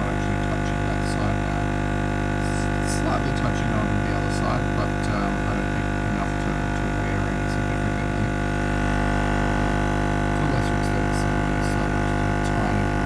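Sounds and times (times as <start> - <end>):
air pump buzzing hum: 0.0 - 13.0.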